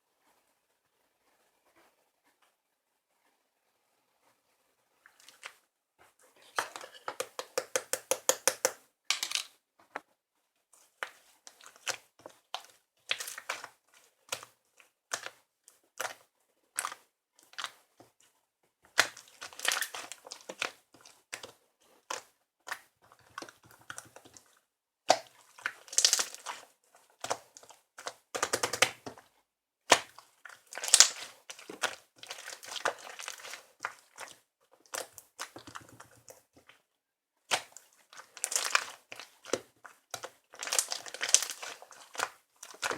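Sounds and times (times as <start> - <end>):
crinkling and rustling: 16.8 - 36.9, 37.5 - 42.9.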